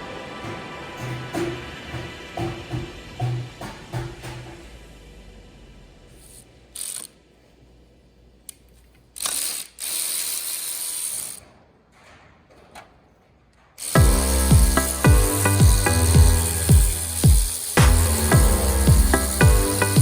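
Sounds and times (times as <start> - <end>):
ratchet wrench clicking: 6.8 - 7.2, 9.2 - 11.4, 14.3 - 20.0
music with heavy beat: 14.0 - 20.0.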